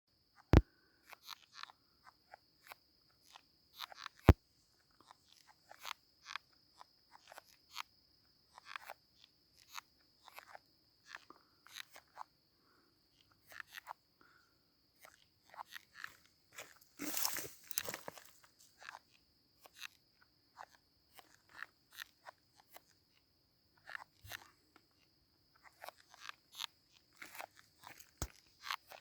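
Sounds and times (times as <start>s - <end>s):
larvae gnawing wood: 5.0s - 7.9s, 8.5s - 12.3s, 13.2s - 14.0s, 15.0s - 29.0s.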